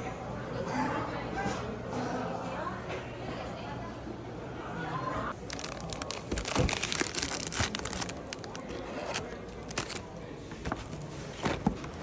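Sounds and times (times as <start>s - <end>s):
crackling and rustling: 5.3s - 12.0s.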